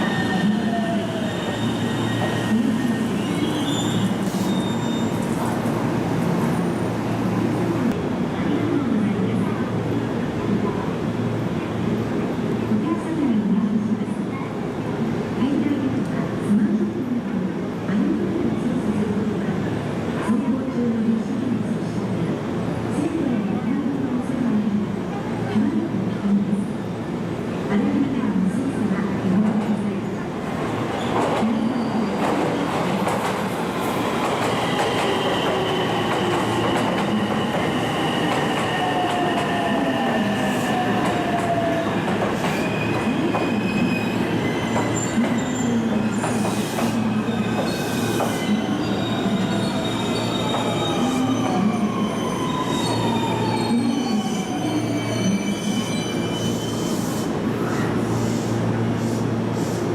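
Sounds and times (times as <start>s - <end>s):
train wheels squealing: 0.0s - 5.5s, 34.5s - 41.3s, 42.4s - 59.9s.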